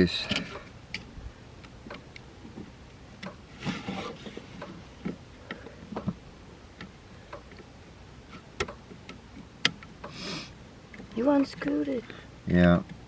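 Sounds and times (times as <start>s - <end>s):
rustle: 2.4s - 7.6s.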